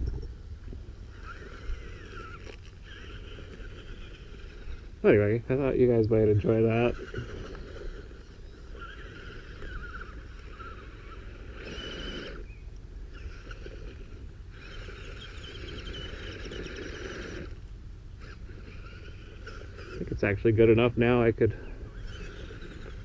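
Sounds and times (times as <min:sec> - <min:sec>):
electric motor whirring: 0:01.1 - 0:21.0, 0:21.9 - 0:23.0.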